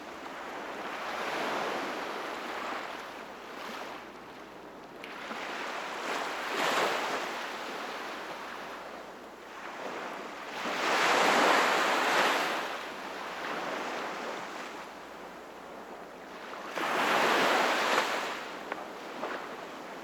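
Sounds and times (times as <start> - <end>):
sea waves breaking on shore: 9.5 - 15.0, 16.3 - 20.0.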